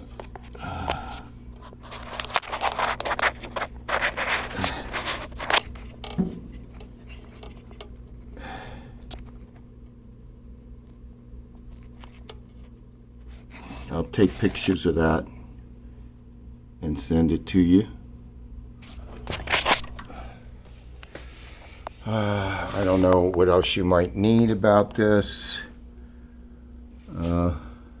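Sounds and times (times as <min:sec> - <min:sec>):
furnace humming: 0:00.0 - 0:28.0
loud scraping and rustling: 0:01.8 - 0:07.4.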